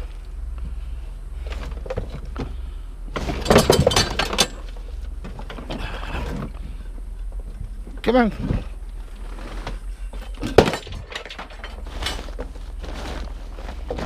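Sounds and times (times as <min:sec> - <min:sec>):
low hum: 0:00.0 - 0:14.0
scrap metal clattering: 0:03.1 - 0:04.9, 0:08.5 - 0:14.0.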